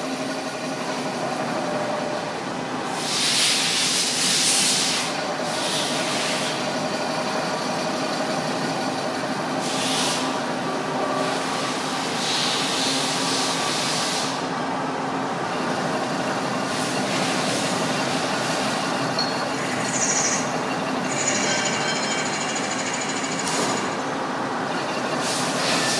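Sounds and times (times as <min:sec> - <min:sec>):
lathe machining: 0:00.0 - 0:25.9
hiss: 0:02.9 - 0:06.6, 0:09.6 - 0:10.3, 0:12.2 - 0:14.4
high whine: 0:18.0 - 0:25.9.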